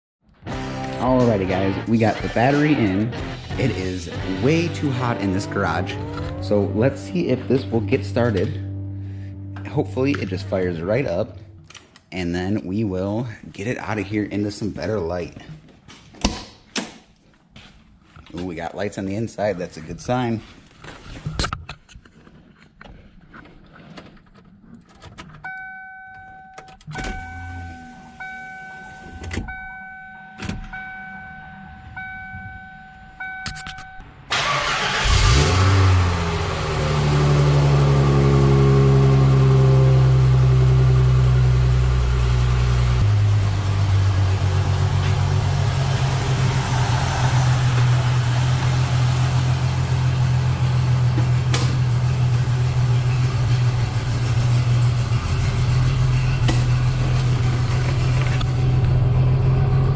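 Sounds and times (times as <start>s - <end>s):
car engine starting and idling: 0.5s - 15.3s, 24.9s - 59.9s
car warning chime: 25.4s - 34.8s.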